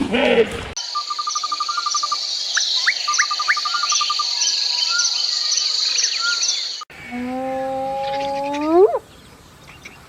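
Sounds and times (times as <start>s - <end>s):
birds calling: 0.8s - 6.9s
insects trilling: 0.8s - 6.9s.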